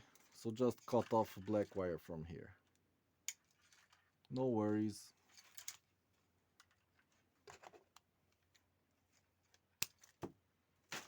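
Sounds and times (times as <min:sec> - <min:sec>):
rustling of hands with wire: 0:02.5 - 0:10.2.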